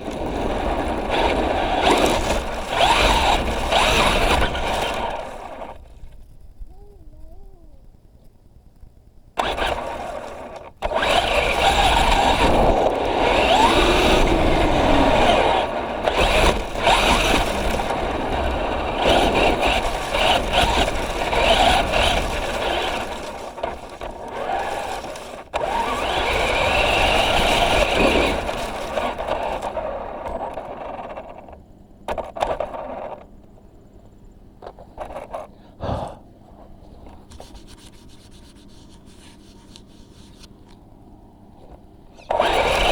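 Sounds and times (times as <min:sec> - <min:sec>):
electric motor whine: 0:00.0 - 0:05.9, 0:09.4 - 0:33.4, 0:42.1 - 0:42.9
tyres and chassis scraping: 0:00.0 - 0:06.4, 0:09.4 - 0:33.5, 0:34.6 - 0:35.8, 0:36.4 - 0:42.9.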